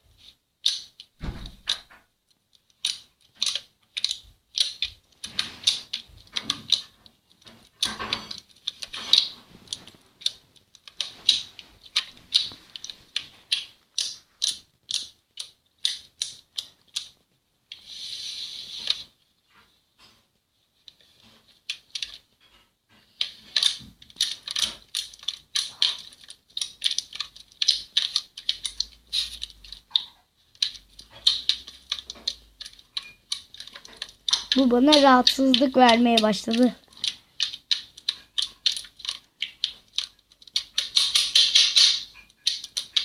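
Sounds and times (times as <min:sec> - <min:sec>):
slime clicking and popping: 0:23.6 - 0:43.0.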